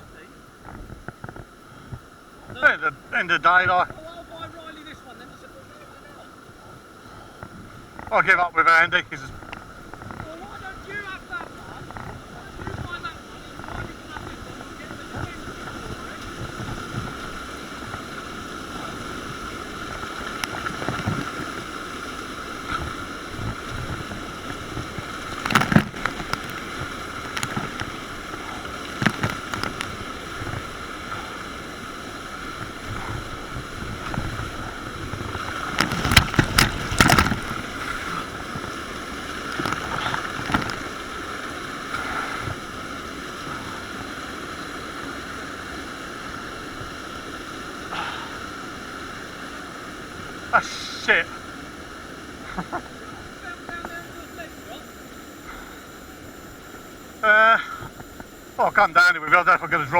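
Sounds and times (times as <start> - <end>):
rushing river water: 0.0 - 54.7
paddle splashes and knocks: 19.9 - 21.9, 22.6 - 30.8, 32.4 - 41.0.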